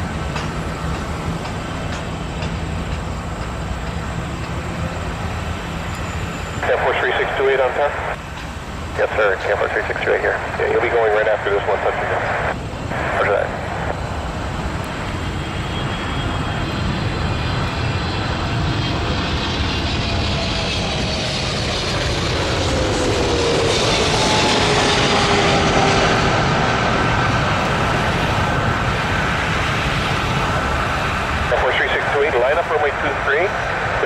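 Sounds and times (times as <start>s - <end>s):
jet aircraft passing by: 0.0s - 34.0s
jet engine whine sliding down: 0.0s - 34.0s.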